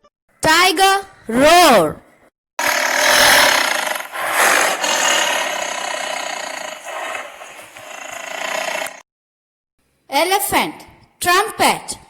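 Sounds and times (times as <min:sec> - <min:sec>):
animal hissing call: 0:02.6 - 0:09.0.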